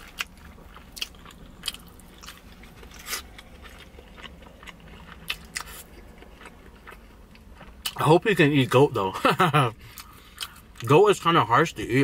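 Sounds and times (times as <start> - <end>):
close chewing: 0.0 - 8.1.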